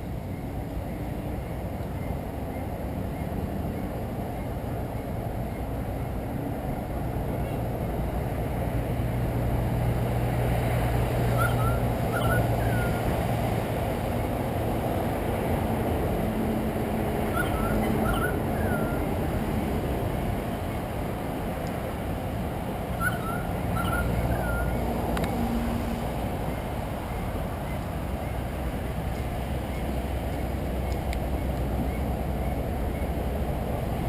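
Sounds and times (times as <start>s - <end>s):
bird chirping: 11.3s - 13.1s, 17.3s - 19.0s, 23.0s - 24.9s.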